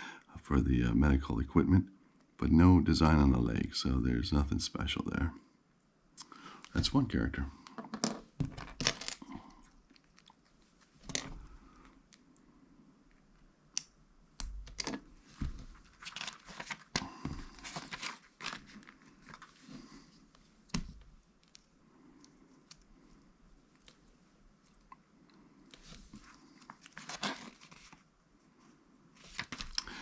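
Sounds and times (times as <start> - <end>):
plastic parts rustling: 7.8 - 9.3, 14.7 - 19.8, 26.6 - 28.0.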